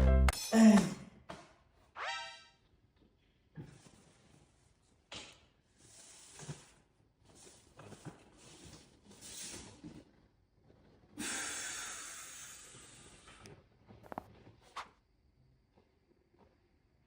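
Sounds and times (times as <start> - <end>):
person breathing: 11.2 - 13.4.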